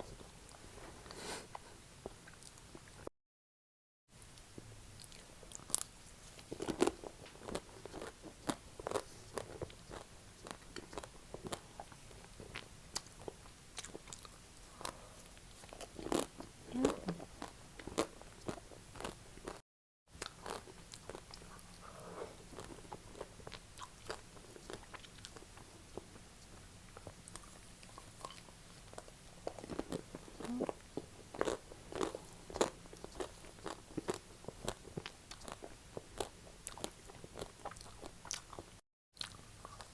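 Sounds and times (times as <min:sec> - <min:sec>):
ice cream being chewed: 0:01.5 - 0:03.0, 0:04.2 - 0:39.9.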